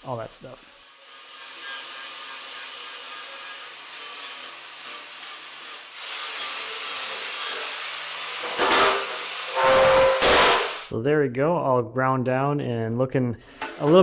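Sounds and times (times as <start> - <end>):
angle grinder grinding steel: 0.1 - 10.9.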